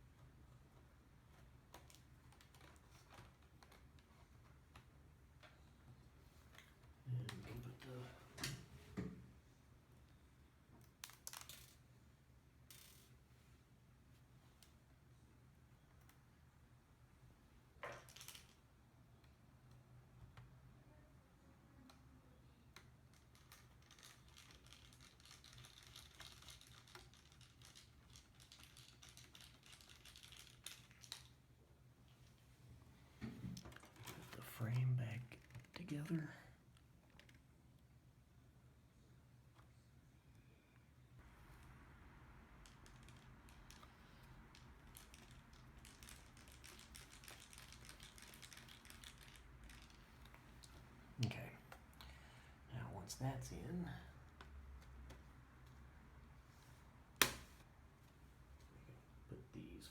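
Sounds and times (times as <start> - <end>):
plastic clicks and rustling: 42.6 - 52.0.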